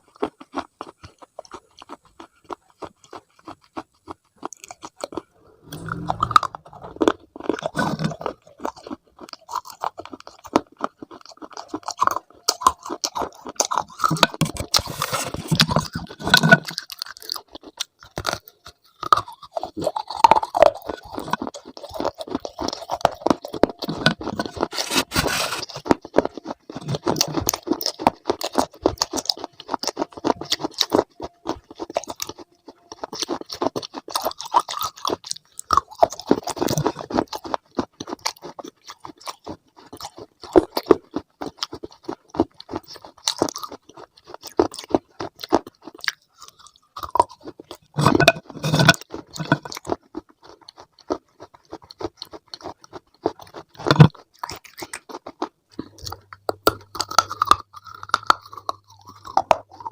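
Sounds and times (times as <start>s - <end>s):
crunchy food chewing: 0.0s - 59.9s.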